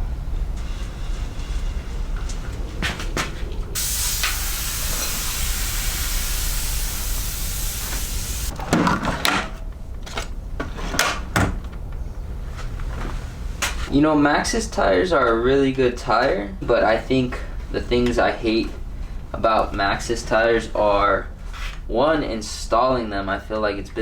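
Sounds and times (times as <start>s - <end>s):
loud air hiss: 3.8s - 8.5s.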